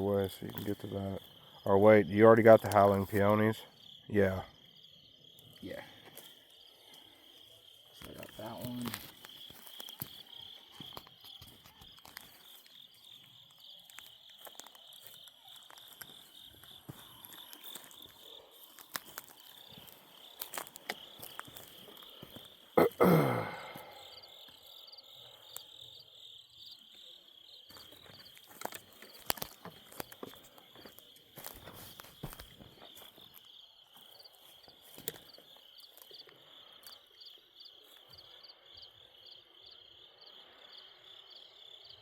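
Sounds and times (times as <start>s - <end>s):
crickets chirring: 0.0s - 42.0s.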